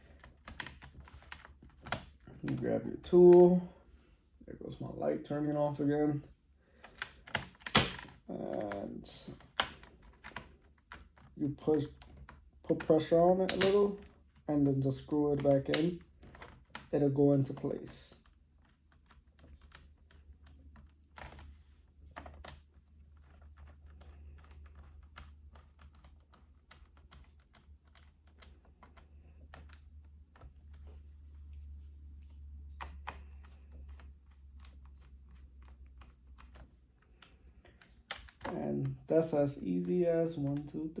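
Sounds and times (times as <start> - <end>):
screwdriver clicks and ticks: 13.4 - 13.9.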